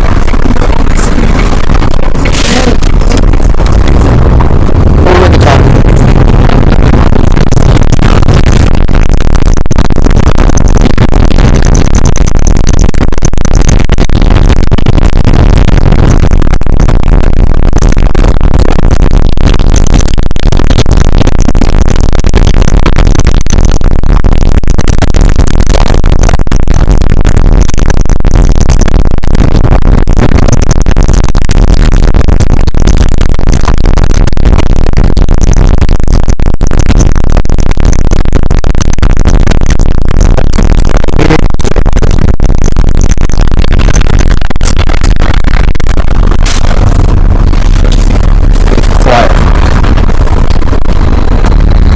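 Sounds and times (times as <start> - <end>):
harsh electronic music: 0.0 - 9.1, 9.9 - 12.2, 41.0 - 41.6, 43.7 - 51.9.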